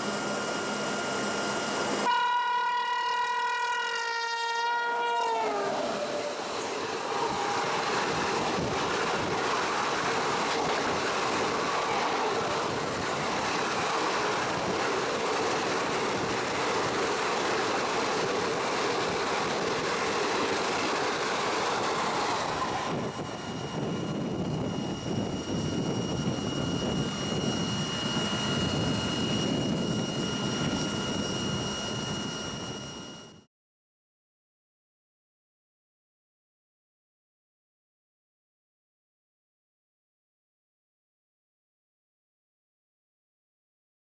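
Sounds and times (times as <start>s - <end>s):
steady high whine: 0.0s - 2.8s, 5.2s - 33.5s
train passing at high speed: 1.8s - 33.1s.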